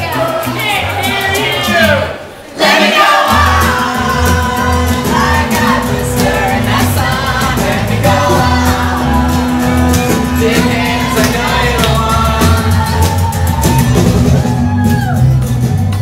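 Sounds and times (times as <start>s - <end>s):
person singing: 2.8s - 14.0s
steady bass beat: 3.3s - 16.0s.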